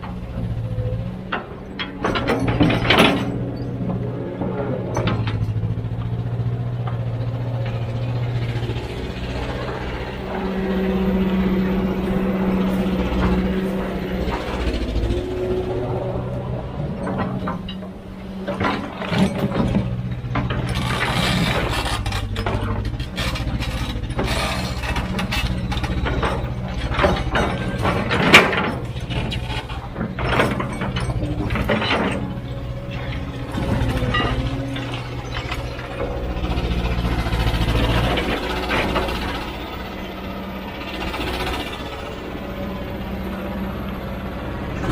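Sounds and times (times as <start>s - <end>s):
heavy diesel machinery running: 0.0s - 44.9s
rock and metal clanks: 1.2s - 40.0s.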